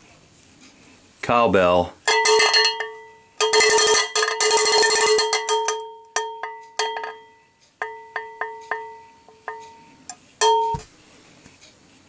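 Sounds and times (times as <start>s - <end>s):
cowbell being struck: 2.0s - 10.8s.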